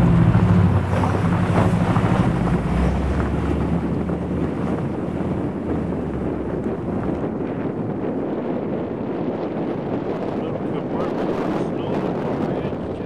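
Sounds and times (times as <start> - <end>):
truck engine running: 0.0 - 7.4
wind buffeting microphone: 0.0 - 13.0.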